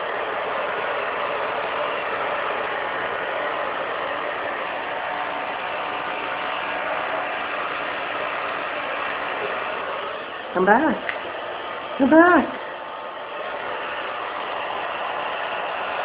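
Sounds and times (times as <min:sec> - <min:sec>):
hair dryer running: 0:00.0 - 0:16.0.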